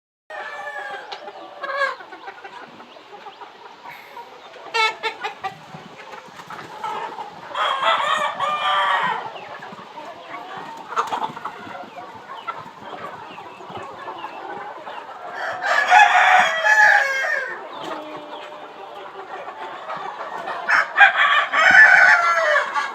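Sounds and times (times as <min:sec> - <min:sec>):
chickens clucking: 0:00.3 - 0:22.9
rooster crowing: 0:15.4 - 0:17.6.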